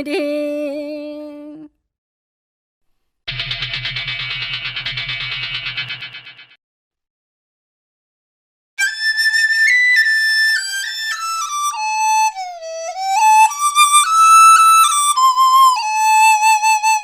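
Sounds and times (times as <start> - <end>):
flute-like solo melody: 8.8 - 17.0.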